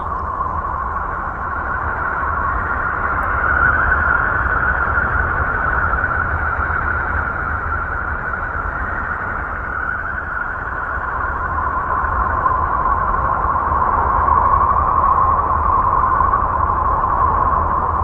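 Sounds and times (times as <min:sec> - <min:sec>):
low rumble: 0:00.0 - 0:04.9.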